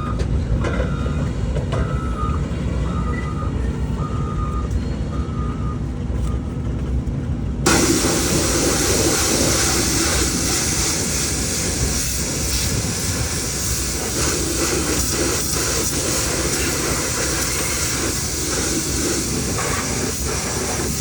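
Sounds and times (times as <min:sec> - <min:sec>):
backup alarm beeping: 0:00.0 - 0:06.5
diesel machinery rumbling: 0:00.0 - 0:21.0
loud steady hiss: 0:07.7 - 0:21.0.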